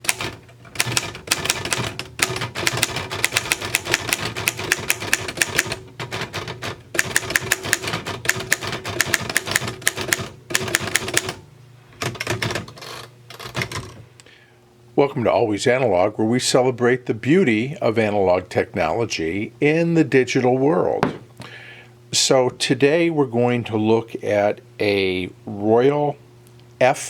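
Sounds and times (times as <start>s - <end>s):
typewriter key strikes: 0.0s - 11.4s.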